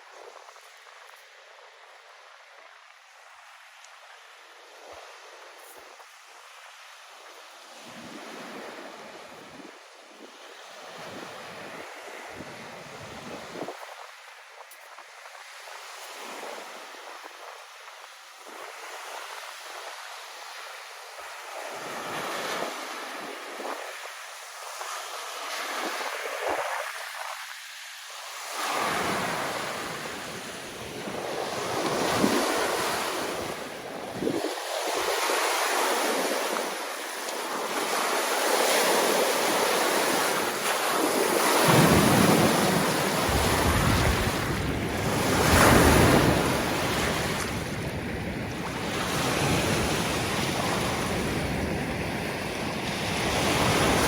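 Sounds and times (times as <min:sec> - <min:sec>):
waves washing onto beach: 0:00.0 - 0:54.0
wind on microphone: 0:07.8 - 0:20.6, 0:21.3 - 0:54.0.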